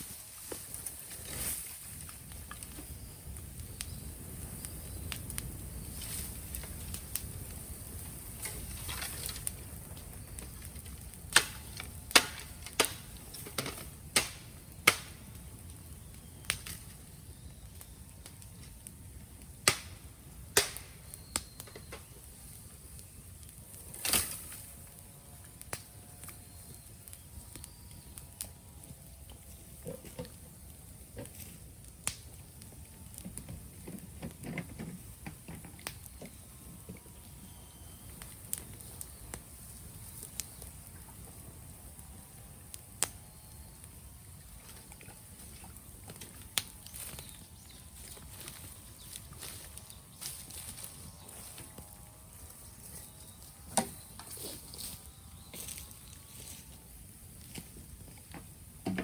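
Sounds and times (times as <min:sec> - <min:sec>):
bamboo bonfire crackling: 0:00.0 - 0:59.0
bamboo popping sharply: 0:19.6 - 0:21.5.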